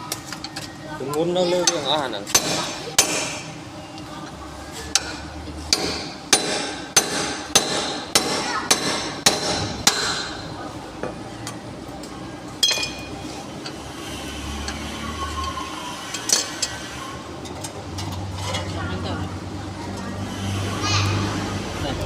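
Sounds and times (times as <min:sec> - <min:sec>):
hammer striking metal: 0:01.7 - 0:03.6, 0:04.9 - 0:10.6, 0:12.6 - 0:13.2.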